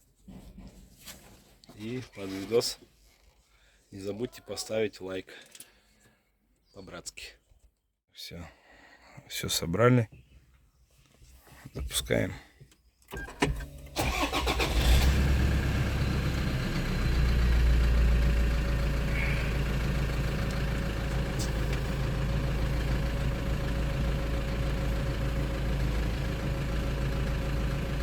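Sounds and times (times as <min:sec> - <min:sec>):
car engine starting and idling: 0:13.1 - 0:28.0.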